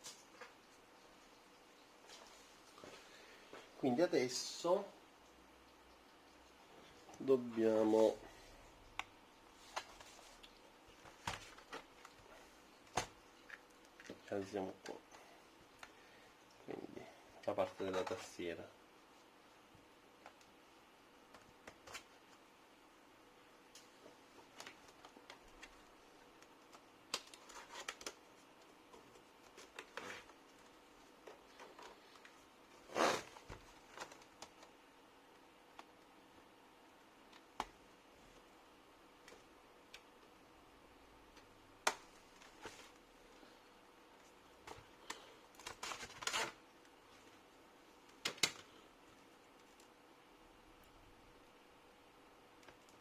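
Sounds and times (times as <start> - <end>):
plastic laptop casing clicks and scrapes: 26.7 - 28.3, 44.6 - 46.6, 48.2 - 48.7
sharp plastic clicks: 48.2 - 48.7.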